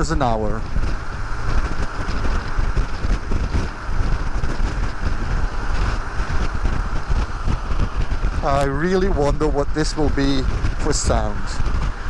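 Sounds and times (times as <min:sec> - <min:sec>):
motorcycle running noise: 0:00.0 - 0:12.0
wind buffeting microphone: 0:00.0 - 0:12.0.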